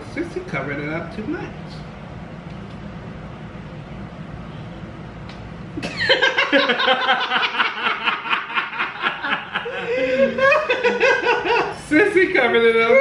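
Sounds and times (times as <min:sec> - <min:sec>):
person laughing: 0:05.8 - 0:11.8.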